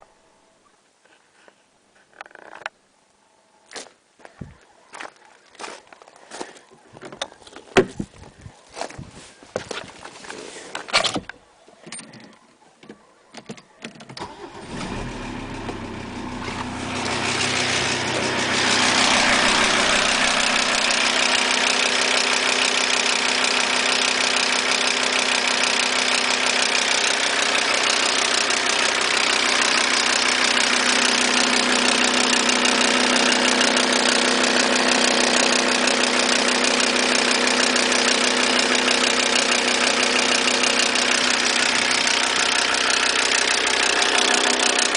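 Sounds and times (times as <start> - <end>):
diesel engine starting and idling: 14.2 - 44.9
engine ticking: 14.2 - 44.9.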